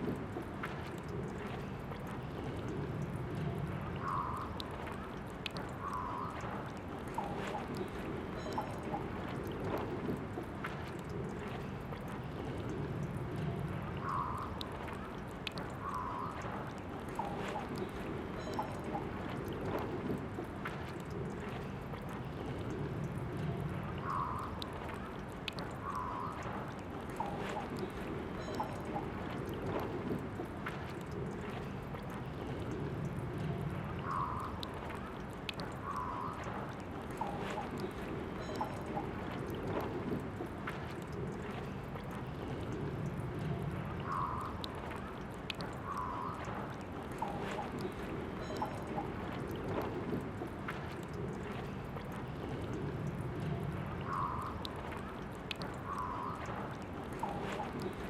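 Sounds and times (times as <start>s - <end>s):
water drips: 0.0s - 58.0s.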